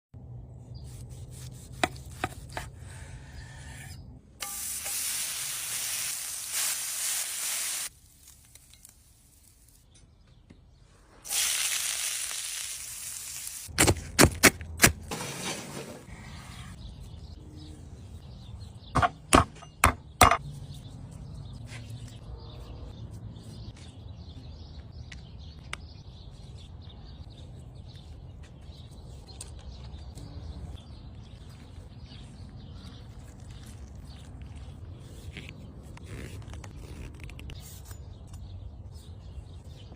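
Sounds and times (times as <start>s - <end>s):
steak sizzling in a pan: 4.4s - 7.9s, 11.3s - 13.7s.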